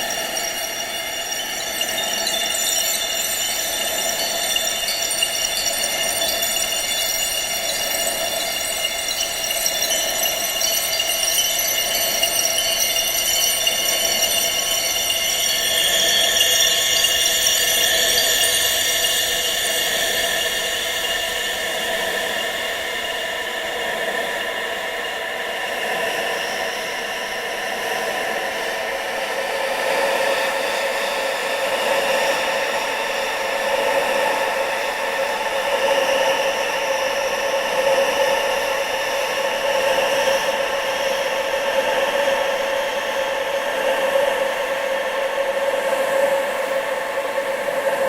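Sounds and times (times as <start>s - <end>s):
whistling tones: 0.0s - 23.2s.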